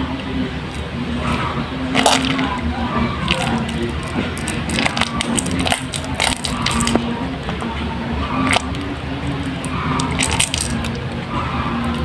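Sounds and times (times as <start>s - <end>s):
crackling clicks: 0.0s - 12.0s
wet soap squishing: 3.2s - 12.0s.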